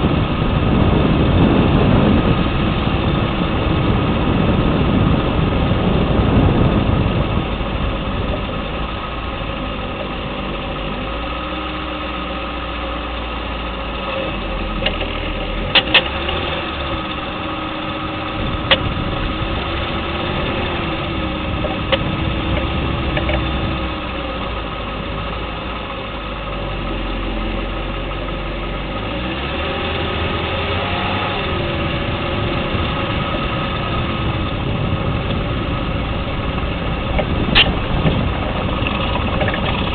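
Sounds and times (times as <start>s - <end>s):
car engine running: 0.0s - 39.9s
suspension clicking: 14.0s - 26.0s, 29.8s - 39.9s.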